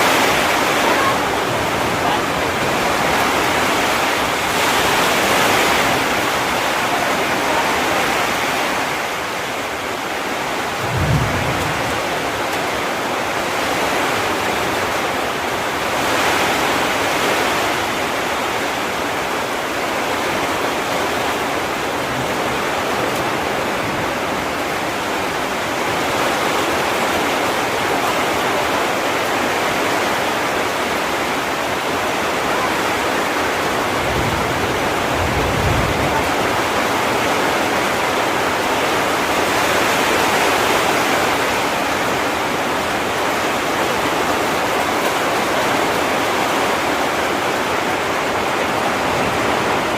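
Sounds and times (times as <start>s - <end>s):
heavy rain: 0.0s - 49.9s
low rumble: 10.7s - 12.4s.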